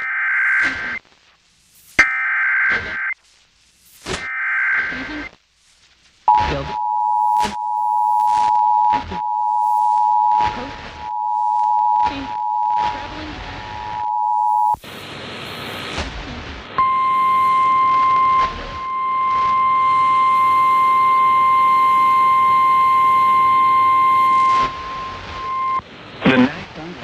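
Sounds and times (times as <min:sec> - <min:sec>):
radio static and crosstalk: 0:00.0 - 0:27.0
steady alarm tone: 0:06.3 - 0:14.8, 0:16.8 - 0:25.8
two-tone attention signal: 0:16.8 - 0:25.8.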